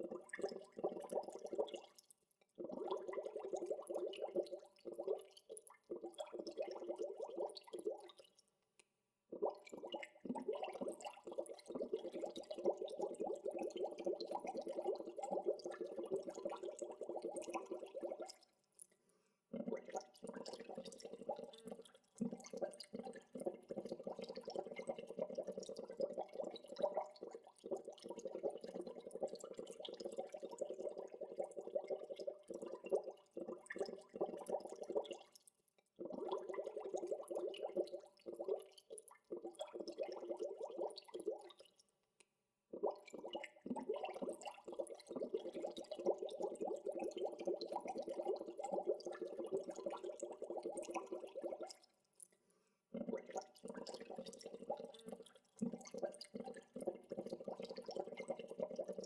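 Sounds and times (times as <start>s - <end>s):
water bubbling: 53.0s - 59.0s.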